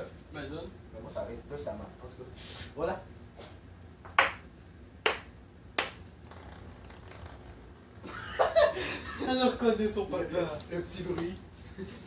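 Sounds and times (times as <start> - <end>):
ping-pong ball bouncing on table: 4.0 - 7.5.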